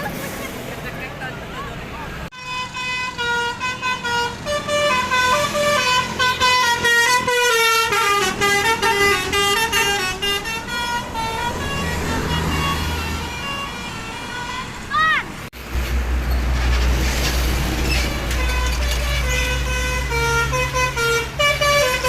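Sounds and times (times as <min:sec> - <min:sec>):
musical air horn melody: 0:02.3 - 0:14.9, 0:17.9 - 0:22.0.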